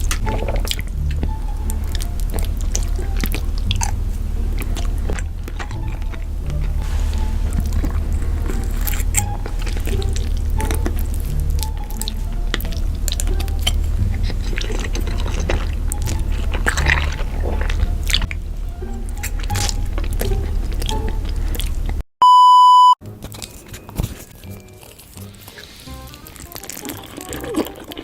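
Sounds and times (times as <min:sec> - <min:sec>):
steady low bass: 0:00.0 - 0:22.0
wet chewing mouth sounds: 0:00.0 - 0:22.0, 0:24.5 - 0:28.0
loud steady beep tone: 0:22.2 - 0:23.0.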